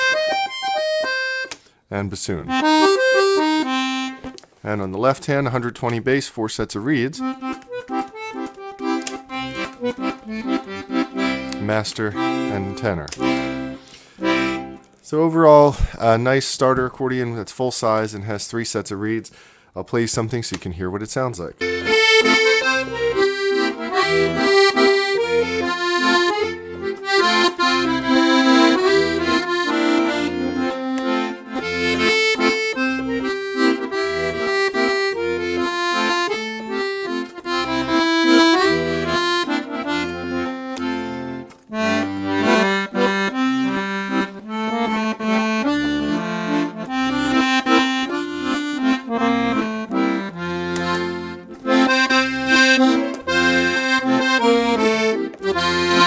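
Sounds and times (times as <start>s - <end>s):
accordion playing a tune: 0.0s - 15.0s, 21.6s - 56.0s.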